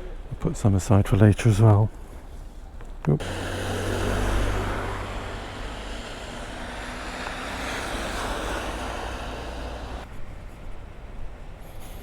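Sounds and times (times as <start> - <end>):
vehicle passing by: 3.2 - 10.1.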